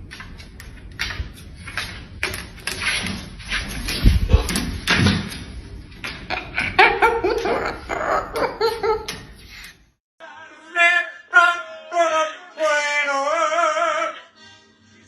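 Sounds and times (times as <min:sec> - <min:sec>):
choppy laughing or chattering voice: 0:06.2 - 0:09.7.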